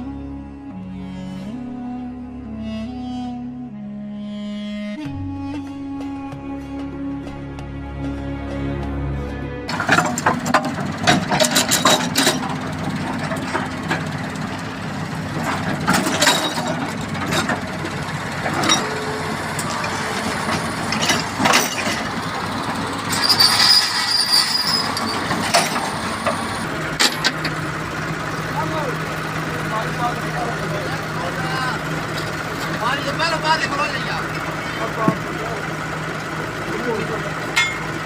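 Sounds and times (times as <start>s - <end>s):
machinery engine hum: 7.6s - 38.0s
sharp metal clanks and knocks: 9.7s - 27.7s, 37.4s - 38.0s
brief high squeal: 23.1s - 25.2s.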